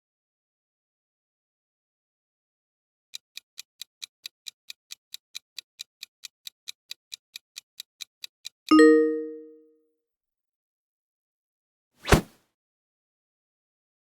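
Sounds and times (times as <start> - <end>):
clock-like timer ticking: 3.2 - 8.6.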